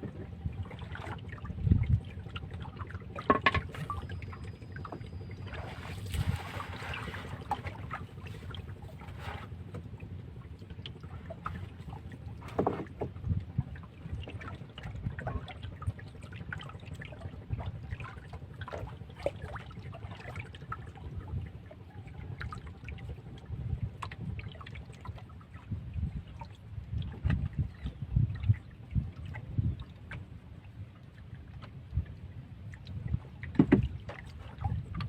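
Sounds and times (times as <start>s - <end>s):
wind rumbling on microphone: 0.0s - 18.9s, 20.8s - 35.0s
outdoor water: 0.0s - 35.0s
small ticks and knocks: 3.2s - 3.8s.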